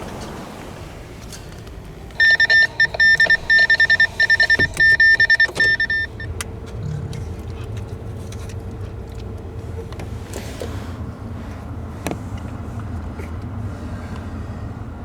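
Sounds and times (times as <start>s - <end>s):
faint steady hum: 0.0s - 15.0s
high electronic beeps: 2.2s - 6.3s.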